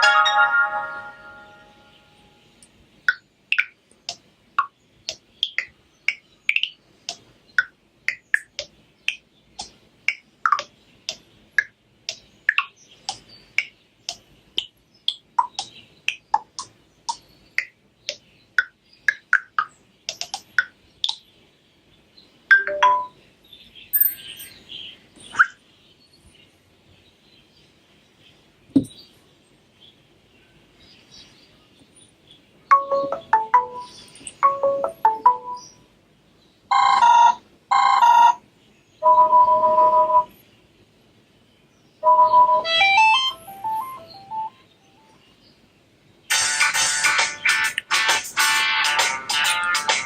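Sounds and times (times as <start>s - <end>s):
bird-song ringtone chirps: 0.0s - 2.5s, 22.5s - 23.2s, 23.9s - 24.6s, 32.7s - 35.9s, 36.7s - 38.4s, 39.0s - 40.4s, 42.0s - 45.2s.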